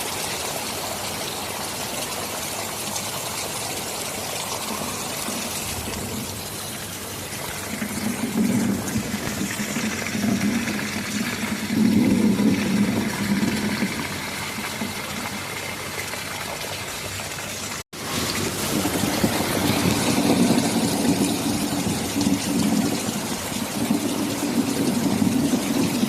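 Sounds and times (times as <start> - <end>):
steady rain: 0.0 - 26.0
thunder rumbling: 4.4 - 15.5, 18.0 - 26.0.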